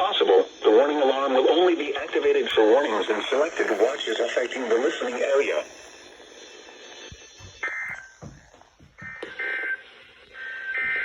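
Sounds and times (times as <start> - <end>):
buzzy two-tone data bursts: 0.0 - 8.4
radio receiver hiss: 0.0 - 11.0.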